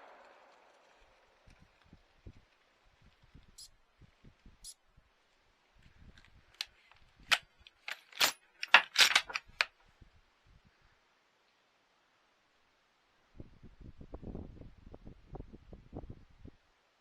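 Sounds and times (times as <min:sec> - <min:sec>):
sharp metallic clicks and clinks: 0:07.3 - 0:09.7.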